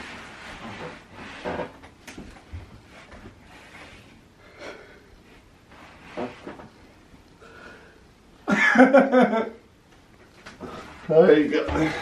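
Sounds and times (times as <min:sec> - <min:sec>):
person breathing with effort: 0:04.4 - 0:05.2, 0:07.4 - 0:08.1.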